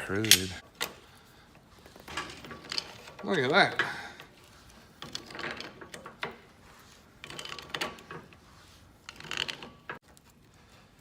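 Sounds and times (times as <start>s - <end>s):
wrench jaw metal scraping: 5.0s - 10.0s.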